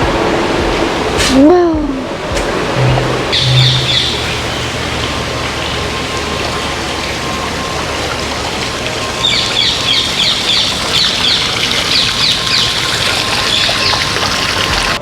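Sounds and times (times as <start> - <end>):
birds chirping: 2.8 - 5.4.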